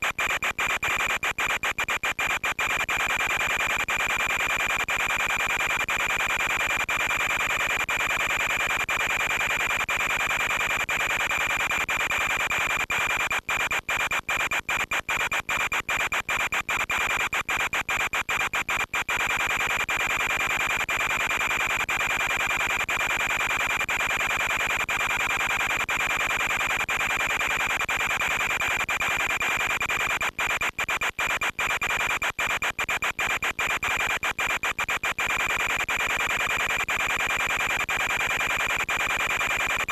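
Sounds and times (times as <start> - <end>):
radio static: 27.1 - 39.9.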